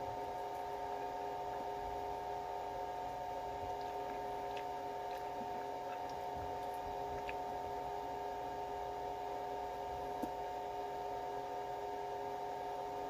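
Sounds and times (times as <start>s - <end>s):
steady electrical hum: 0.0s - 13.0s
soft eating sounds: 2.8s - 8.2s.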